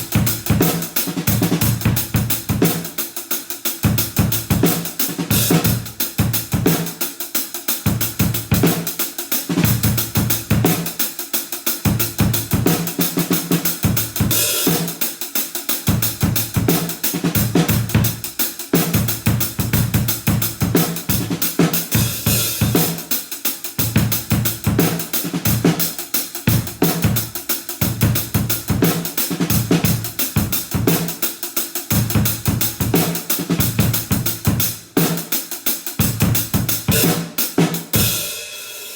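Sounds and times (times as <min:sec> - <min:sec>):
acoustic drum kit groove: 0:00.0 - 0:38.9
cymbal crashes: 0:38.0 - 0:38.9.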